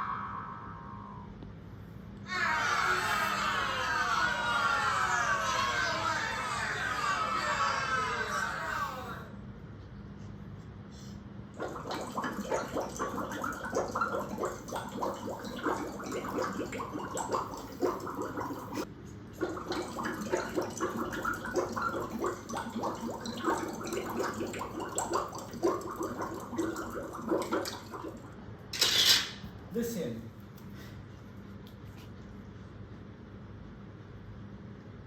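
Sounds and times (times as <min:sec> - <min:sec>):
gurgling bubbling pops: 0:11.6 - 0:28.4.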